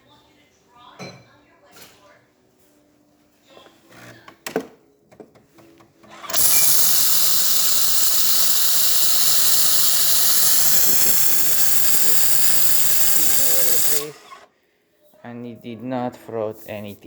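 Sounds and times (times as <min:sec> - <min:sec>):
loud steam hiss: 0:06.3 - 0:14.2.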